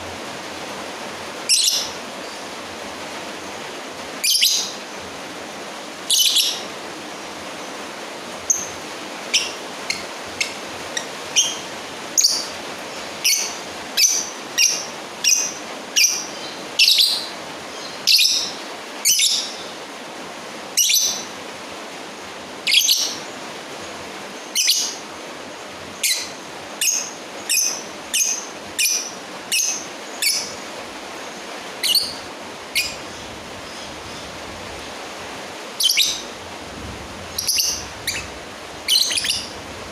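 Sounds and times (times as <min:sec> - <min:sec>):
steady hiss: 0:00.0 - 0:39.9
bird shrill chirps: 0:35.8 - 0:36.2, 0:38.9 - 0:39.6.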